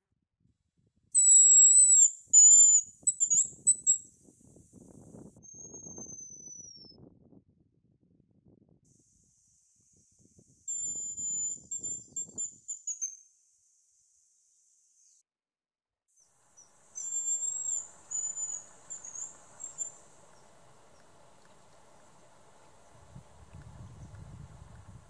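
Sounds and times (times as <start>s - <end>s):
grouse whistled song: 1.1s - 4.2s, 5.4s - 7.0s, 9.5s - 13.4s, 16.6s - 23.1s.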